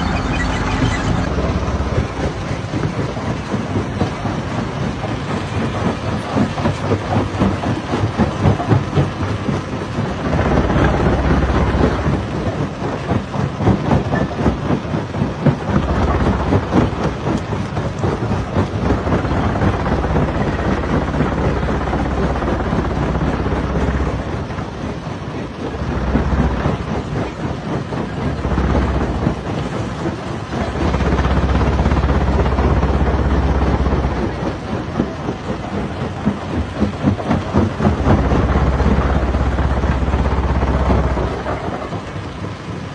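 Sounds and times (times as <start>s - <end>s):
deep machine rumble: 0.0s - 14.6s, 15.6s - 42.6s.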